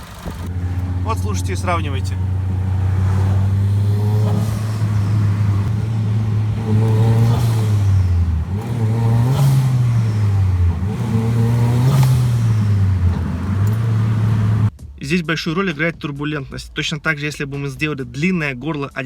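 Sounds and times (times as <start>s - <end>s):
car engine revving: 0.0s - 14.7s.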